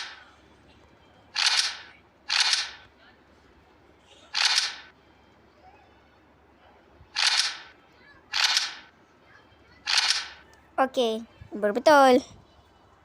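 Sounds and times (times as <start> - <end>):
toy pistol hissing bursts: 1.4 - 2.8.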